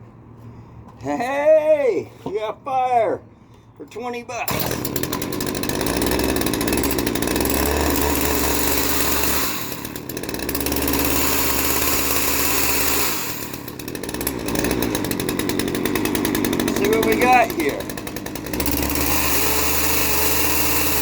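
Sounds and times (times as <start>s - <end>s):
chainsaw engine running unevenly: 4.5s - 21.0s.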